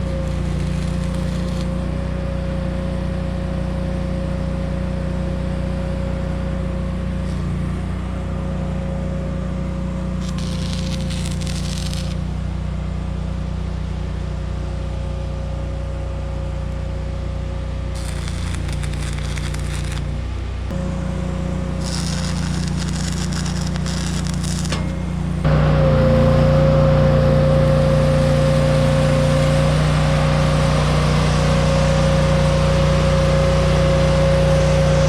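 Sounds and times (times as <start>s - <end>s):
equipment humming: 0.0s - 1.8s, 10.2s - 12.4s, 18.0s - 35.0s
metal crackling and hissing: 0.0s - 1.8s, 10.2s - 12.4s, 18.0s - 20.2s, 21.8s - 25.4s, 27.6s - 35.0s.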